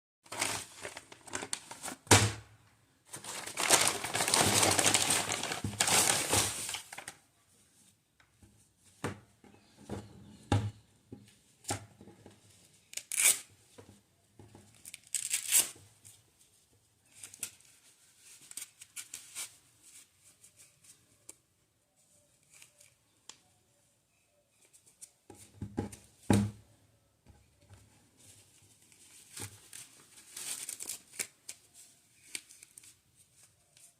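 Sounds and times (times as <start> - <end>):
packaging rustling and crinkling: 0.3 - 2.1, 3.1 - 7.2
packaging tearing: 3.1 - 7.1, 13.0 - 13.5, 14.9 - 15.8.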